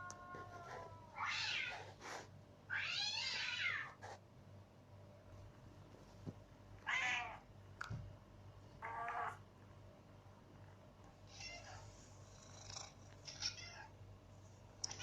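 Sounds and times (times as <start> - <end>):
cat meowing: 6.8 - 7.4, 13.2 - 13.9.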